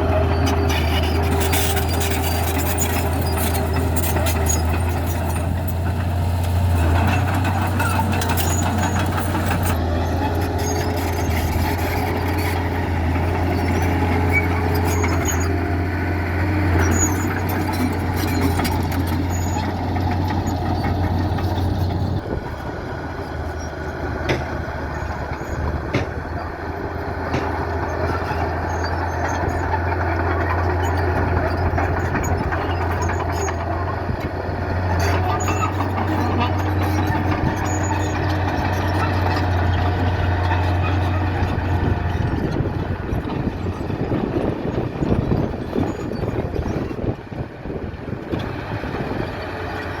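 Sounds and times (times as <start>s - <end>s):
heavy diesel engines running: 0.0s - 50.0s
knocks and clanks: 24.2s - 24.7s, 25.3s - 26.4s, 27.2s - 27.7s.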